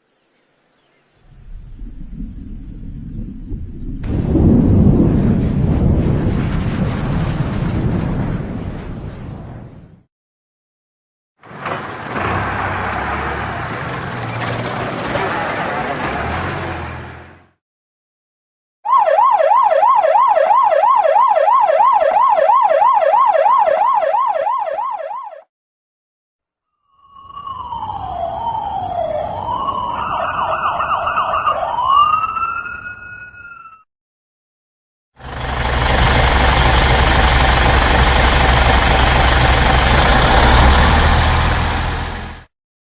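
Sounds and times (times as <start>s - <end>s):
heavy vehicle engine humming: 11.5s - 17.5s, 35.2s - 42.4s
emergency siren in fast yelp: 18.9s - 25.5s, 27.0s - 33.8s.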